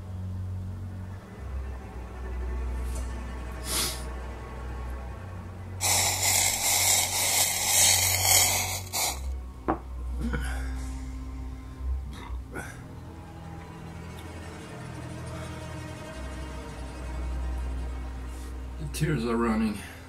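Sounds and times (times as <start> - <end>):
background music: 0.0 - 20.0
forceful blow of breath: 3.6 - 4.1
man breathing hard: 3.6 - 4.1.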